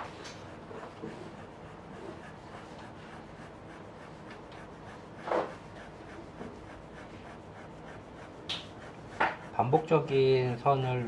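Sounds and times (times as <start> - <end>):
pencil strokes on paper: 0.0 - 11.0.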